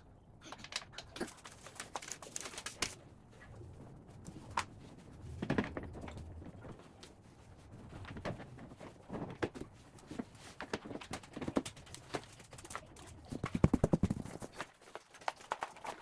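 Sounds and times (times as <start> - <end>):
parts knocking and clicking: 10.2 - 16.0
rapid clicking: 11.9 - 14.6.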